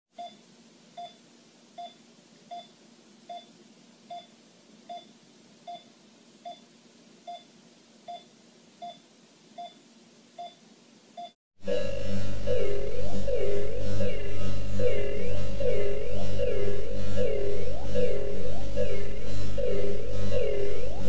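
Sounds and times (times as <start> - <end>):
electronic heartbeat beep: 0.2 - 0.4, 1.0 - 1.2, 1.8 - 3.5, 4.1 - 6.7, 7.3 - 7.5, 8.1 - 9.0, 9.6 - 9.8, 10.4 - 10.6, 11.2 - 21.0.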